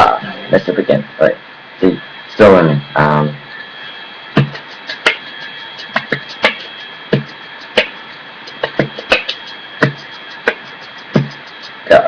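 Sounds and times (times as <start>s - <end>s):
person beatboxing: 4.4s - 12.0s.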